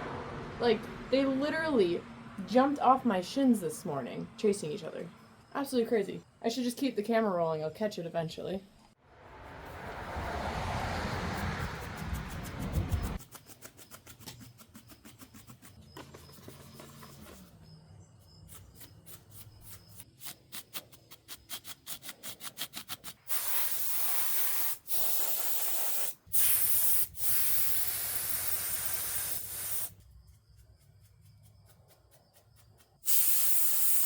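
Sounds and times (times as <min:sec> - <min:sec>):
aerosol spray can hissing: 0:23.3 - 0:30.0, 0:33.0 - 0:34.0.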